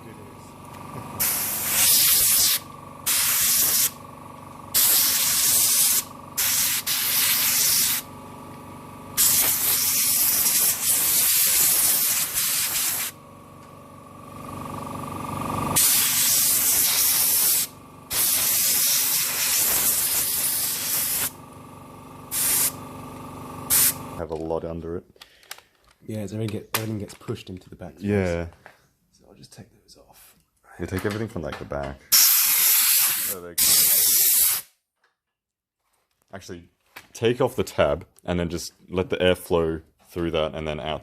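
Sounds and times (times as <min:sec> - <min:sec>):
compressed air blasts hissing: 0:01.2 - 0:04.0, 0:04.7 - 0:08.1, 0:09.2 - 0:13.2, 0:15.7 - 0:21.4, 0:22.3 - 0:22.8, 0:23.7 - 0:24.0, 0:32.1 - 0:34.7.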